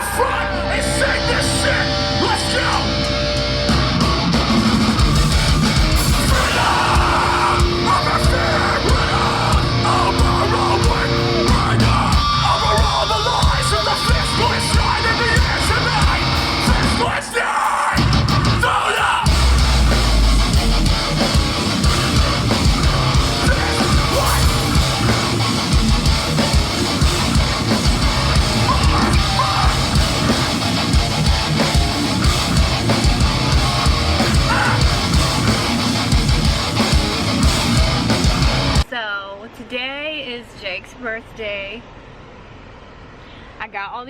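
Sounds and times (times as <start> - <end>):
distorted electric guitars: 0.0 - 38.9
dense drumming: 3.0 - 17.2, 18.0 - 38.8.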